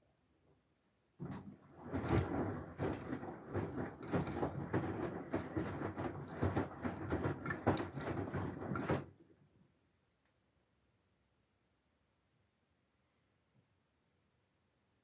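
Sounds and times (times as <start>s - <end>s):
washing machine water sloshing: 1.2s - 9.2s.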